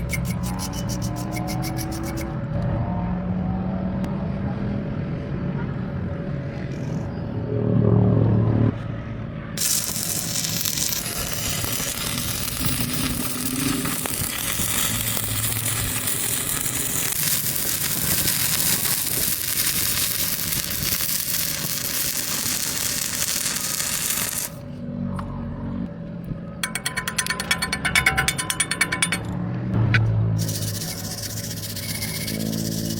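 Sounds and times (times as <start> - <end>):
welding arc hissing: 9.6 - 24.6, 30.4 - 32.9.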